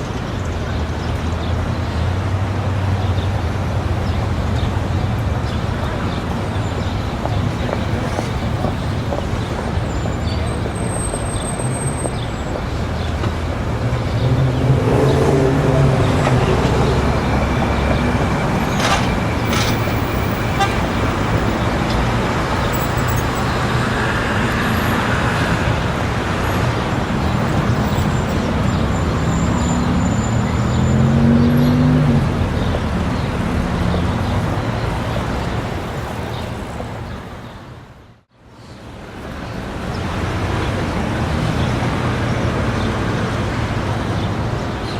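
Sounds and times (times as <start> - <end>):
traffic with vehicles passing: 0.0 - 44.9
crowd talking: 5.5 - 13.9.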